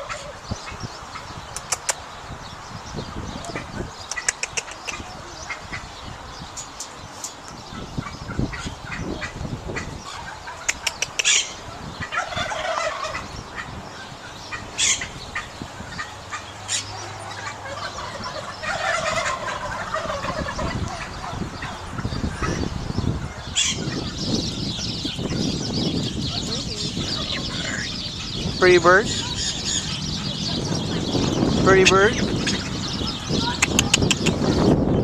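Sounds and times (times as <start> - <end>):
turkeys gobbling: 0.0 - 0.4, 7.7 - 24.2, 25.1 - 31.2.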